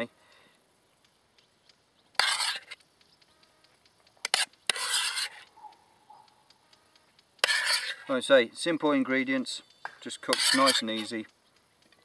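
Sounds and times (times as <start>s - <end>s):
utensil scraping and clicking cookware: 2.1s - 5.5s, 7.0s - 8.1s, 9.7s - 12.0s.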